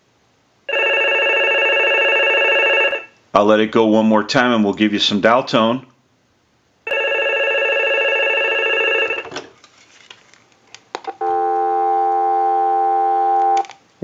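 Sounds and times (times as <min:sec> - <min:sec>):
dial tone: 0:00.7 - 0:03.1, 0:06.9 - 0:09.2, 0:11.2 - 0:13.6
telephone ringing: 0:00.7 - 0:03.2, 0:06.9 - 0:09.4, 0:11.2 - 0:13.7.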